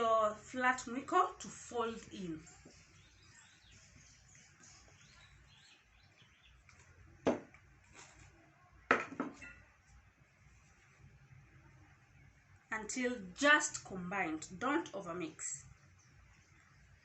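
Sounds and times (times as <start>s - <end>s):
wooden spoon folding batter: 6.5s - 8.9s.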